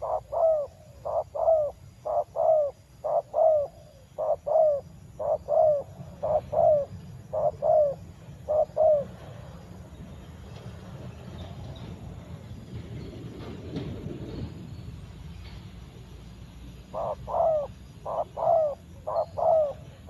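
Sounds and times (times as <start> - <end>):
dove cooing: 0.0 - 9.4, 16.9 - 20.0.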